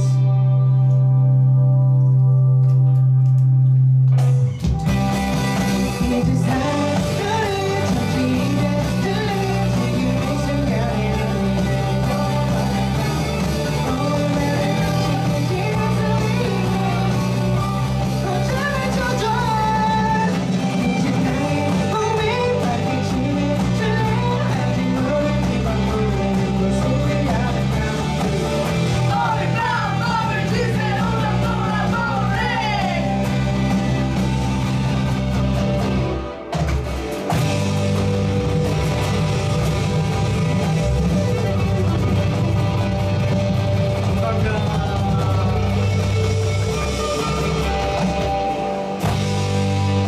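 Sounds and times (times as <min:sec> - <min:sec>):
guitar: 0:00.0 - 0:50.0
steady bass: 0:00.0 - 0:50.0
person singing: 0:05.7 - 0:33.8, 0:43.9 - 0:49.1.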